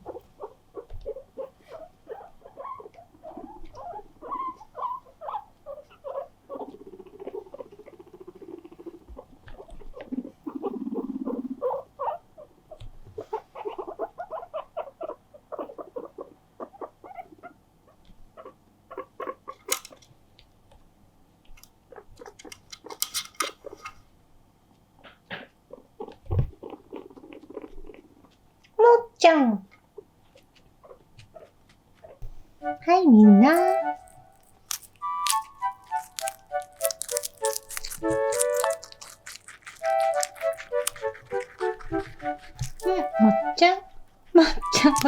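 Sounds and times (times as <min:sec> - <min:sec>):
guinea pigs squeaking: 0:00.0 - 0:20.0, 0:21.9 - 0:23.9, 0:25.3 - 0:29.0, 0:30.0 - 0:45.0.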